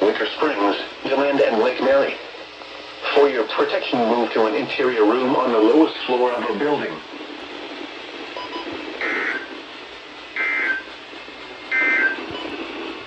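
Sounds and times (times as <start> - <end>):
radio static: 5.8 - 11.0.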